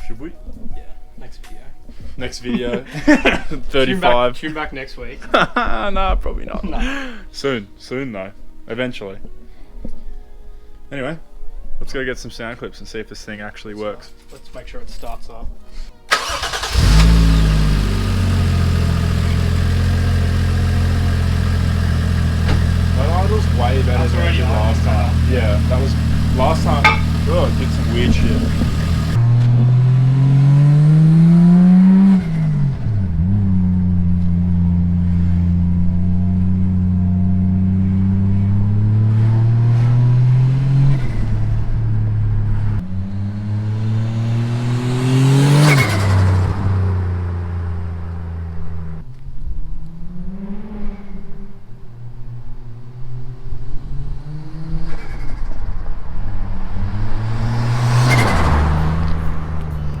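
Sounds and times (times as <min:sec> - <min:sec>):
car engine accelerating hard: 0:16.1 - 0:49.1, 0:52.6 - 1:00.0
car passing close by: 0:36.8 - 0:48.8, 0:52.8 - 1:00.0.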